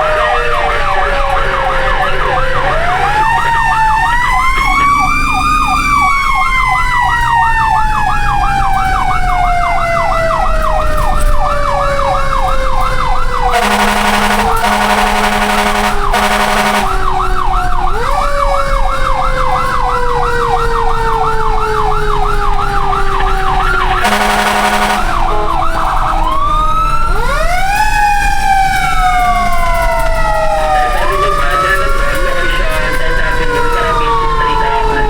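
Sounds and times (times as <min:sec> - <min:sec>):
siren wailing: 0:00.0 - 0:35.0
siren yelping warble: 0:00.0 - 0:35.0
buzzing horn blasts: 0:13.4 - 0:18.1, 0:22.9 - 0:26.5.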